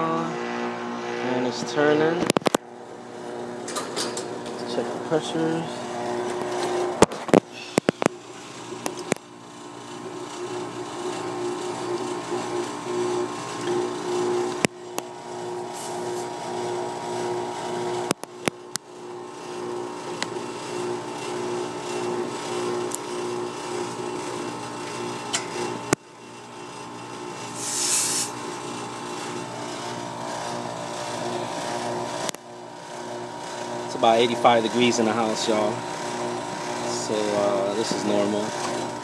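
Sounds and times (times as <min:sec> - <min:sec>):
air conditioner unit humming: 0:00.0 - 0:39.0
brief high hiss: 0:27.6 - 0:28.4.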